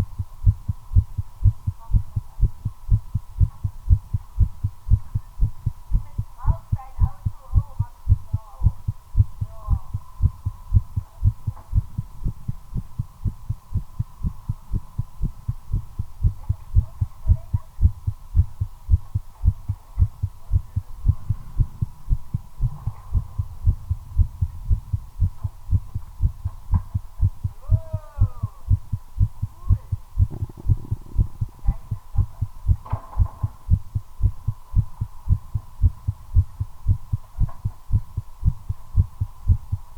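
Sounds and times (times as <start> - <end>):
faint steady hum: 0.0 - 39.9
fast heartbeat thumps: 0.0 - 39.9.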